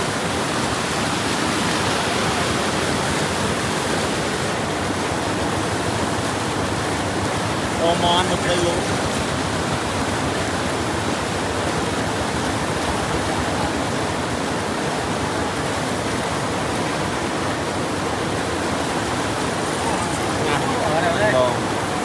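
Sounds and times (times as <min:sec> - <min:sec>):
floodwater rushing through sluice: 0:00.0 - 0:22.0.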